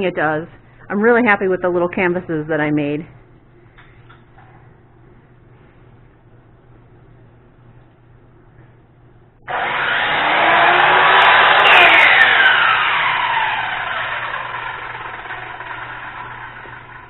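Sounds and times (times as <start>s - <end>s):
radial arm saw running: 9.5s - 17.0s.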